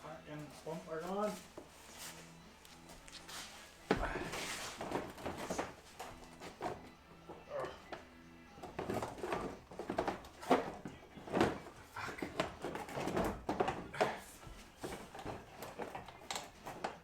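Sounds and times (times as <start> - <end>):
irregular knocking and clattering: 3.9 - 17.0.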